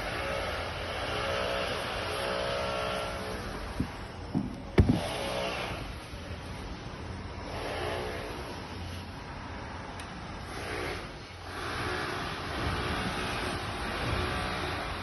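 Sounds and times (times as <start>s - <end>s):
short knocks: 3.8s - 5.1s.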